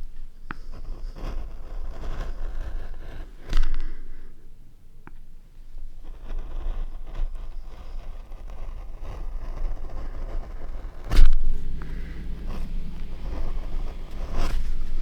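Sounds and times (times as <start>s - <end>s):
scraping and rustling: 11.1s - 15.0s.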